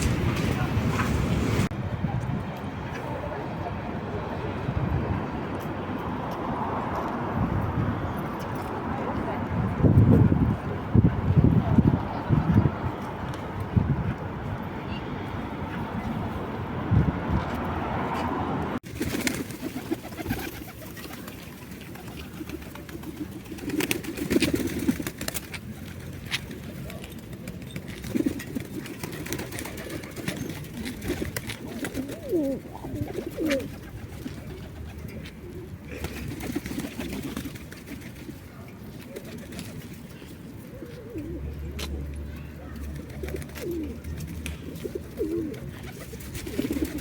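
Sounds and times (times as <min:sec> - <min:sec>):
pigeons cooing: 0:29.0 - 0:34.6, 0:42.5 - 0:47.0.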